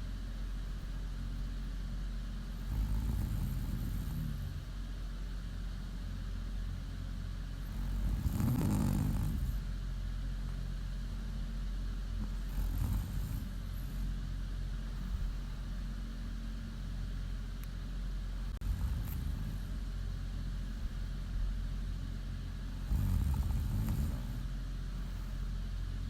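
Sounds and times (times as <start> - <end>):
steady low hum: 0.0 - 26.0
woman snoring: 2.5 - 4.8, 7.6 - 9.7, 12.2 - 14.1, 18.5 - 19.9, 22.7 - 25.4.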